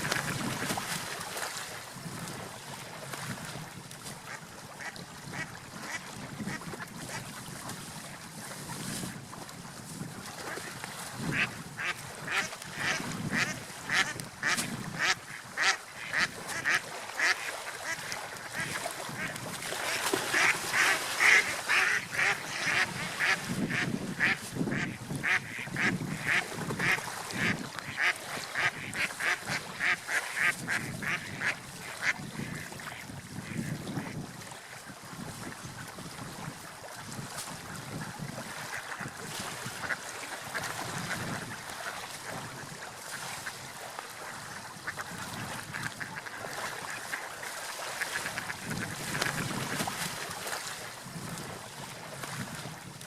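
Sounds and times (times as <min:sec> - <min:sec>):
ducks quacking: 0:11.3 - 0:34.2, 0:39.8 - 0:42.0, 0:44.8 - 0:47.2.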